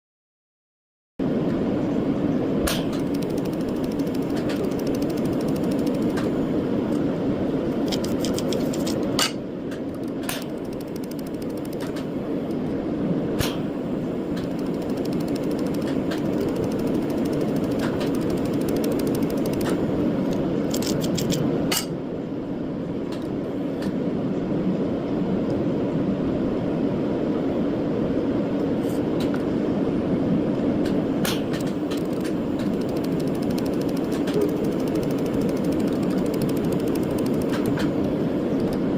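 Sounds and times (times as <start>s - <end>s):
cooling fan hum: 1.2s - 38.9s
laser pulse ticks: 2.7s - 7.0s, 9.9s - 12.6s, 14.3s - 20.9s, 31.6s - 38.8s.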